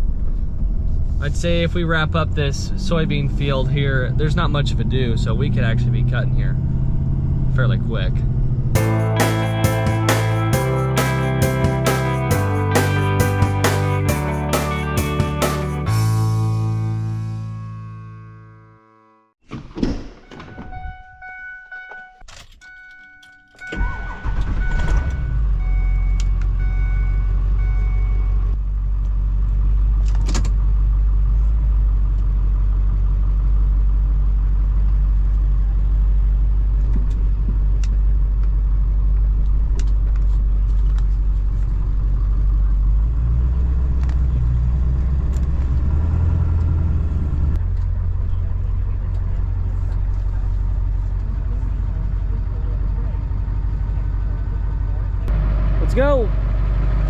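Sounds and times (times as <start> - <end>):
engine running: 0.0 - 18.7, 23.7 - 57.0
short beeping tones: 20.2 - 28.5.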